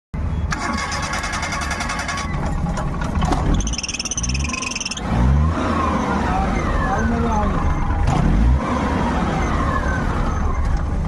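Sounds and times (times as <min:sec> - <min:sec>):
engine low rumble: 0:00.2 - 0:11.0
drive belt squealing: 0:00.5 - 0:05.1
drive belt chirping: 0:03.4 - 0:05.1.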